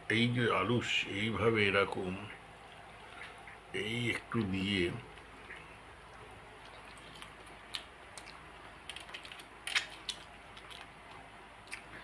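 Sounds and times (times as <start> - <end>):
mouth smacks: 11.7 - 12.0.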